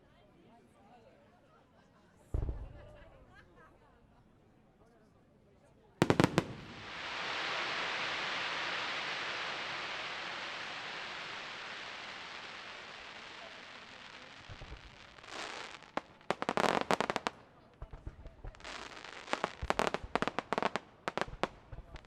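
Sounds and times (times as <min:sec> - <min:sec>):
low firework thumps: 0:06.0 - 0:13.4
firework crackling hiss: 0:06.0 - 0:22.0
sharp firework pops and crackles: 0:06.0 - 0:22.0.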